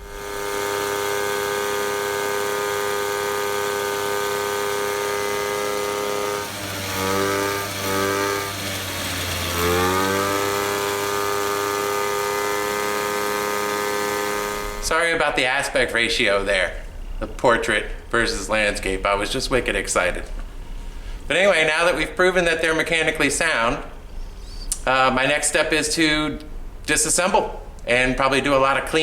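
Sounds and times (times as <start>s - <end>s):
moped engine running: 0.0s - 14.9s.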